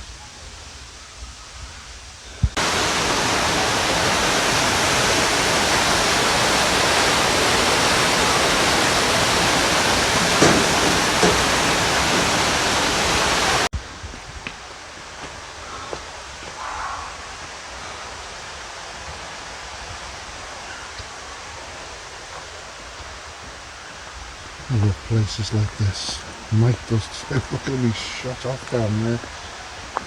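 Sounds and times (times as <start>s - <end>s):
waterfall rushing: 2.5s - 13.7s, 17.1s - 30.0s
small knocks: 10.1s - 12.5s.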